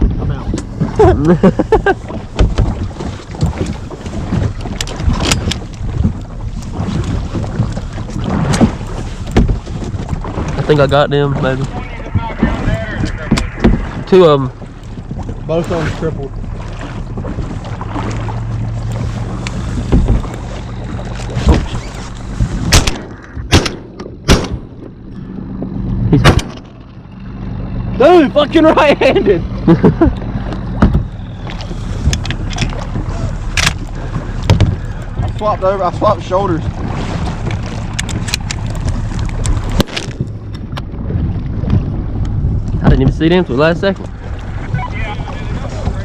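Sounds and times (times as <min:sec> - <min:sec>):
wind buffeting microphone: 0:00.0 - 0:26.2, 0:26.8 - 0:46.0
low rumble: 0:00.0 - 0:46.0
water around boat: 0:00.0 - 0:46.0
shotgun shots: 0:22.7 - 0:24.8.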